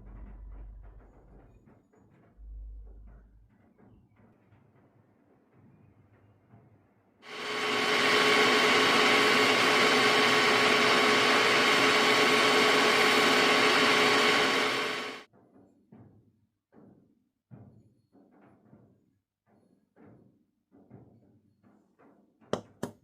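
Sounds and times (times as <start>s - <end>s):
small motor tool whining: 7.3s - 15.3s.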